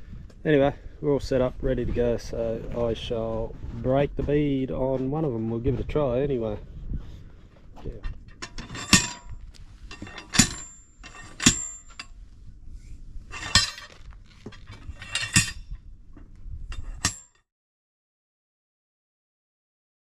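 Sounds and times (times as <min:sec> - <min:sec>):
metal tool striking metal: 0:08.4 - 0:12.1, 0:13.4 - 0:15.8, 0:16.7 - 0:17.4.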